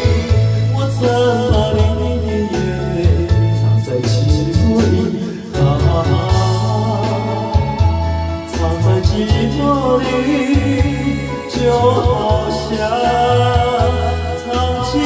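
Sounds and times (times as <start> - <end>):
held bass notes: 0.0 - 15.0
steady drum beat: 0.0 - 15.0
sustained melody line: 0.0 - 15.0.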